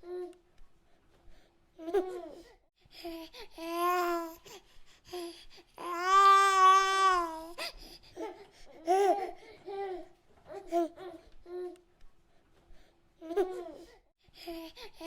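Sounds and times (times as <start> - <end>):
baby crying: 3.5 - 4.4, 5.8 - 11.2.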